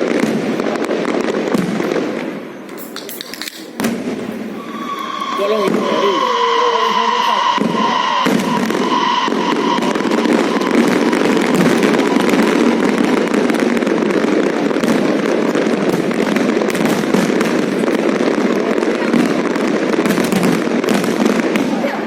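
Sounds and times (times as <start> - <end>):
fireworks crackling: 0.0 - 22.0.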